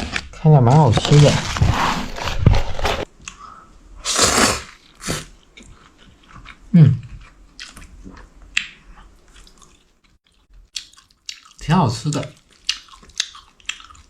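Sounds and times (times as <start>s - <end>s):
slurping and chewing noodles: 4.0s - 14.0s.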